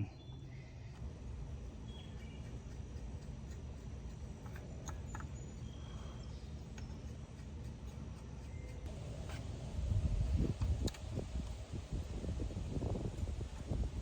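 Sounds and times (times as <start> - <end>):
low background rumble: 0.0 - 14.0.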